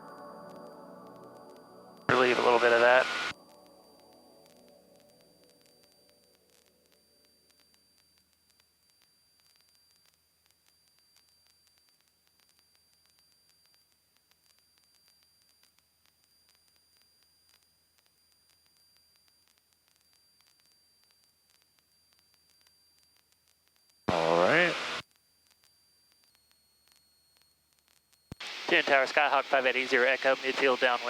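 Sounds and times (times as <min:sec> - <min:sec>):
faint steady hiss: 0:00.0 - 0:31.0
faint ticks: 0:03.3 - 0:24.1, 0:25.0 - 0:28.5.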